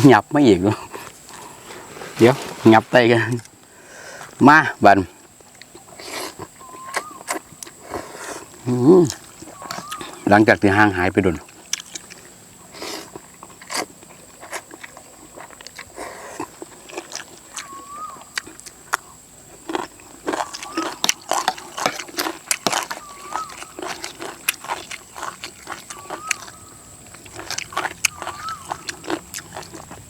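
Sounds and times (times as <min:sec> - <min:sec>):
person biting and chewing: 0:12.8 - 0:30.0.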